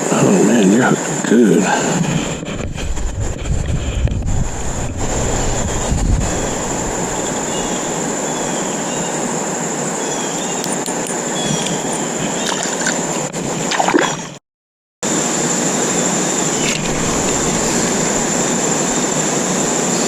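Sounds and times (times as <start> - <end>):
wind rumbling on microphone: 1.0 - 9.6, 15.5 - 20.0
thin high tone: 4.8 - 9.0
river water rushing: 15.1 - 20.0.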